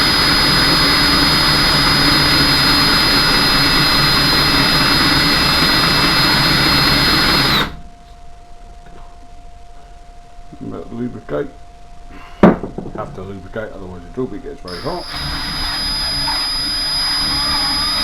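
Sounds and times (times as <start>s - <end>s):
electric drill whining: 0.0s - 7.9s, 14.7s - 18.0s.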